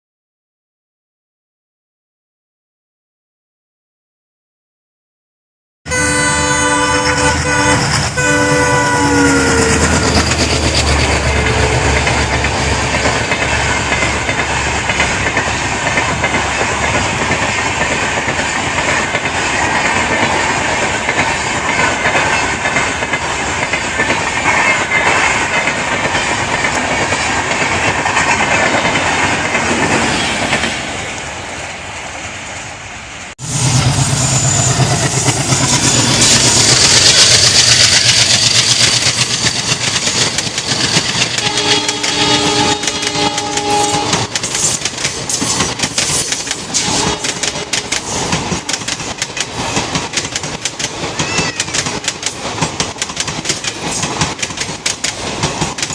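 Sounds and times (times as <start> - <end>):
train horn: 5.9 - 10.2, 11.2 - 12.0, 41.4 - 44.3, 46.8 - 47.9
train rushing past: 5.9 - 55.9
wheels clacking on rail joints: 7.4 - 31.2, 34.5 - 55.9.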